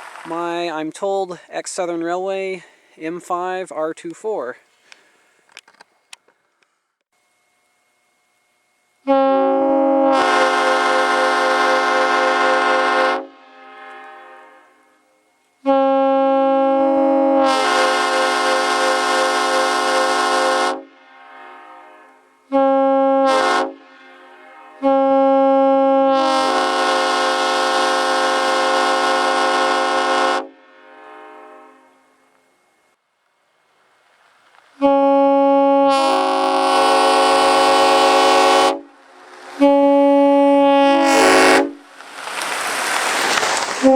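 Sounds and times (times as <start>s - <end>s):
locomotive air horn chord: 9.0s - 32.7s, 34.8s - 41.8s
horn echo: 9.1s - 15.0s, 15.6s - 32.1s, 34.8s - 39.0s, 39.6s - 41.8s.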